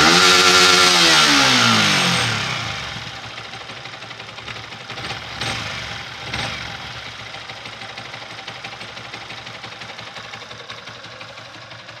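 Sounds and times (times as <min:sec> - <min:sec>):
fast ticking engine rattle: 0:00.0 - 0:12.0
motorcycle engine revving and idling: 0:00.0 - 0:12.0.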